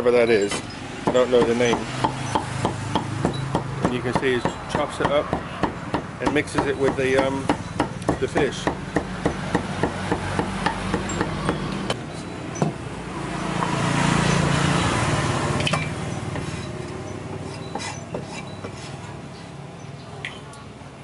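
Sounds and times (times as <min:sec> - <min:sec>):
knife chopping on wooden board: 0:01.0 - 0:11.6.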